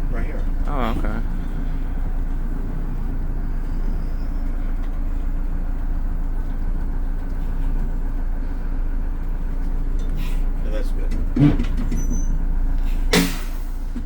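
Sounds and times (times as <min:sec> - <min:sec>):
bus diesel engine humming: 0:00.0 - 0:14.0.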